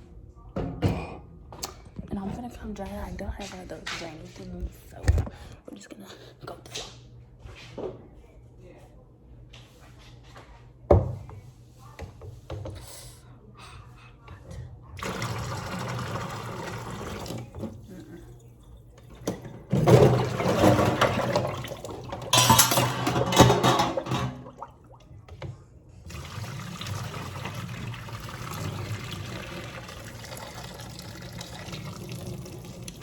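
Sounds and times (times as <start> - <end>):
water pouring into sink: 15.0 - 25.1, 26.1 - 33.0.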